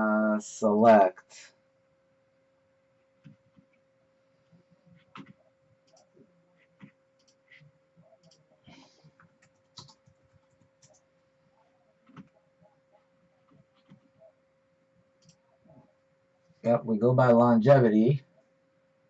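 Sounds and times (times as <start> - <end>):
computer keyboard typing: 3.2 - 3.8, 4.8 - 11.1, 12.0 - 12.4, 13.4 - 14.3, 15.2 - 15.8
mouse clicking: 4.9 - 11.1, 12.0 - 14.3, 15.2 - 15.8.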